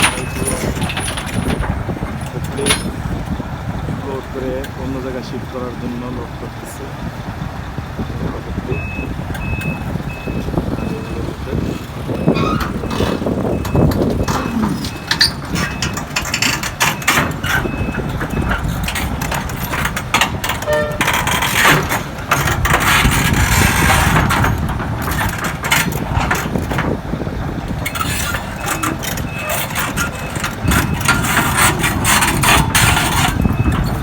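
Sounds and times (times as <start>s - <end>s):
metal knocks and clanks: 0.0s - 4.8s, 12.0s - 34.0s
diesel machinery rumbling: 0.0s - 34.0s.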